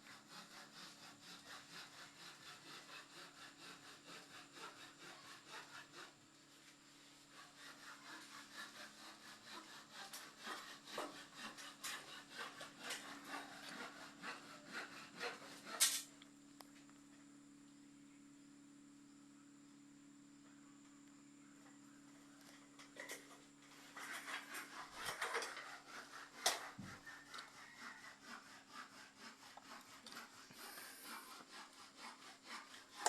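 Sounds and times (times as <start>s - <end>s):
ceiling fan scraping rub: 0.0s - 16.1s, 22.4s - 33.0s
faint motor hum: 0.0s - 33.0s.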